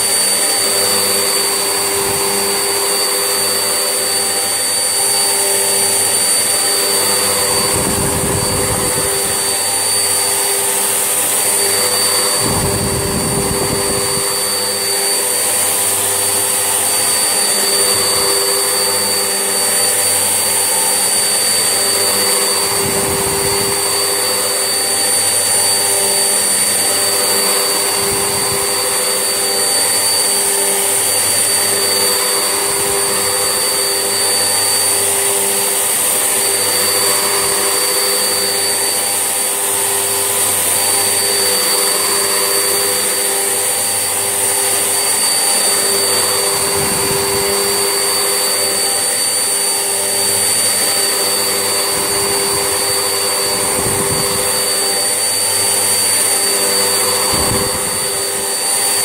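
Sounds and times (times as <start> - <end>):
vacuum cleaner motor whine: 0.0 - 59.0.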